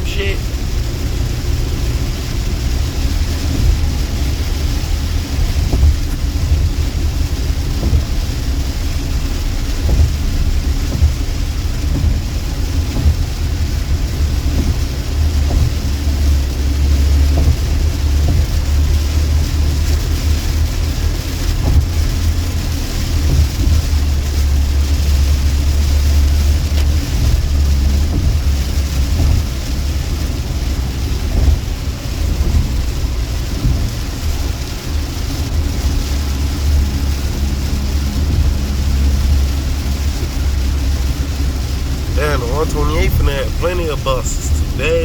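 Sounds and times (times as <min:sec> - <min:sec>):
car road noise rumble: 0:00.0 - 0:45.0
rain: 0:00.0 - 0:45.0
tyres hissing on wet pavement: 0:00.0 - 0:45.0.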